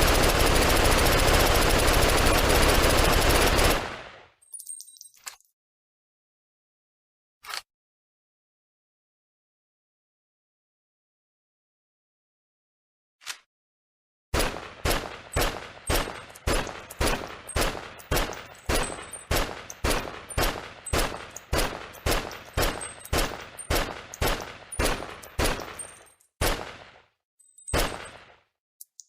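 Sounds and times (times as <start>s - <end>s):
submachine gun single shots: 14.4s - 27.0s, 27.7s - 28.4s.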